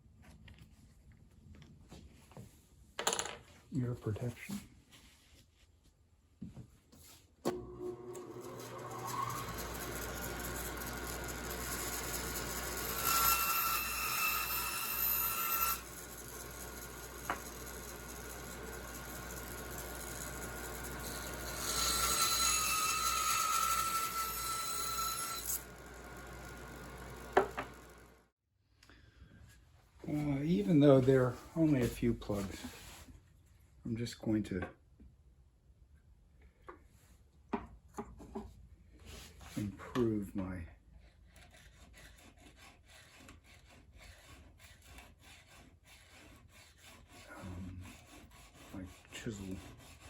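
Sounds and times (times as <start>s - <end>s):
bandsaw cutting wood: 7.5s - 28.3s, 41.4s - 50.0s.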